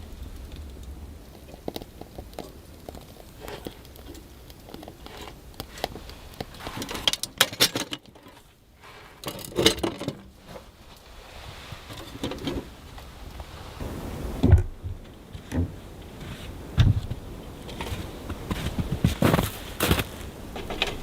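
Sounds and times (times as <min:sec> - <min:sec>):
firewood knocking and snapping: 0:00.0 - 0:08.4.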